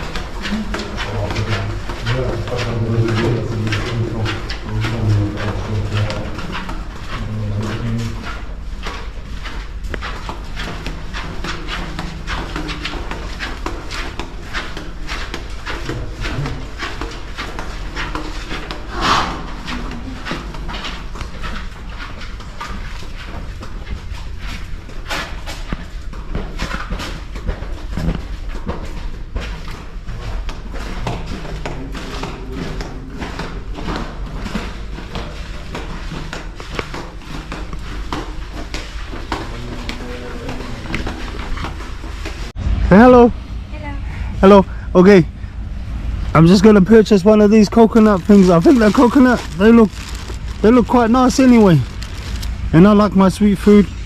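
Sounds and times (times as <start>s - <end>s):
footsteps on hard surface: 0.0s - 43.4s, 44.4s - 54.0s
steady low hum: 0.0s - 54.0s
low rumble: 18.8s - 20.2s, 42.4s - 46.8s
loud brief sound: 18.9s - 19.5s.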